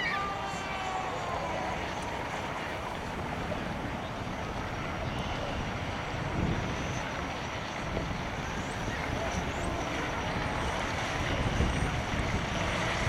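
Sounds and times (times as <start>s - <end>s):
model boat motor whine: 0.0s - 13.0s.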